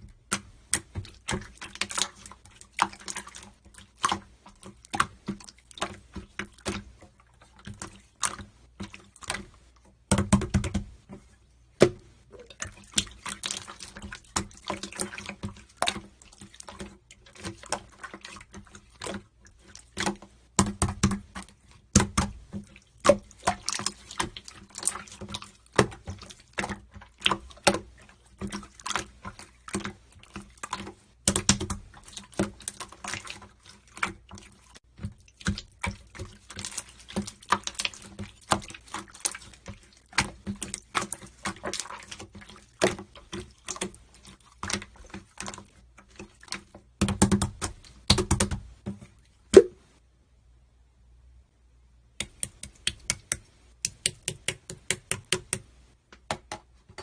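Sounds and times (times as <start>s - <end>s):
quick clicks and taps: 52.2s - 57.0s.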